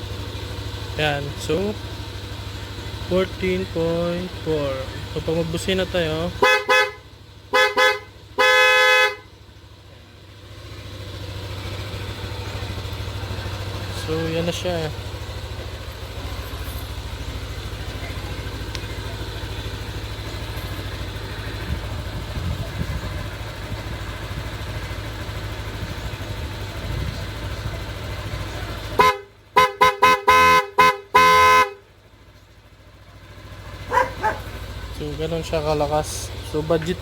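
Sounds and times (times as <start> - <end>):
scooter engine idling: 0.0 - 37.0
loud horn toots: 6.4 - 9.4, 28.9 - 31.9.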